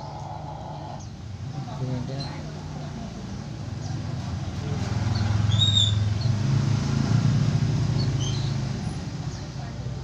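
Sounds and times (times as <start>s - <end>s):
high bird chirps: 5.1s - 6.4s.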